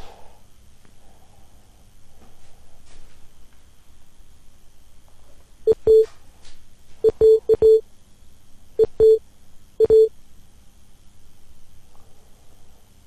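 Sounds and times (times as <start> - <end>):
short electronic beeps: 5.7 - 6.1, 7.0 - 7.8, 8.8 - 9.2, 9.8 - 10.1.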